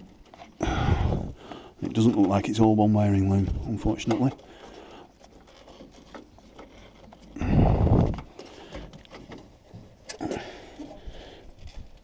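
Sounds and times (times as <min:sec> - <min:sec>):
knocks and clicks of wiring: 0:03.8 - 0:04.4.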